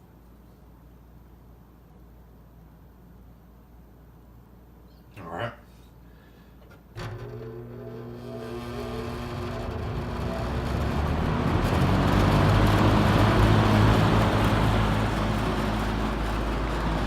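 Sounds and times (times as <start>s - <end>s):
box fan motor hum and air rush: 7.0s - 17.0s
vibrating fan grill buzz: 7.0s - 17.0s.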